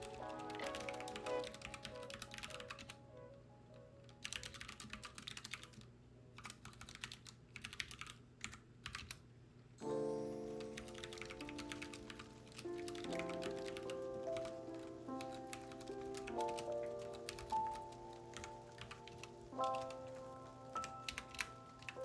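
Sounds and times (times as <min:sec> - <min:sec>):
computer keyboard typing: 0:00.0 - 0:03.0, 0:04.0 - 0:09.2, 0:10.6 - 0:20.2, 0:20.8 - 0:22.0
soft background music: 0:00.0 - 0:05.4, 0:09.8 - 0:22.0.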